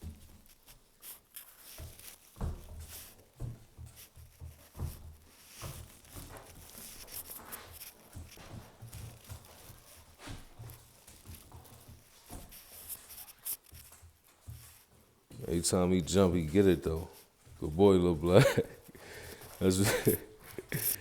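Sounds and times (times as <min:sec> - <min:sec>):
puppy scuffling with a toy: 0:00.0 - 0:15.2.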